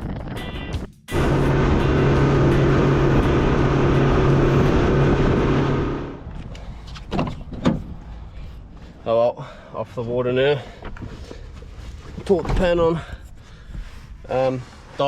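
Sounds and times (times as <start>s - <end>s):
motorboat engine running: 1.1s - 6.3s.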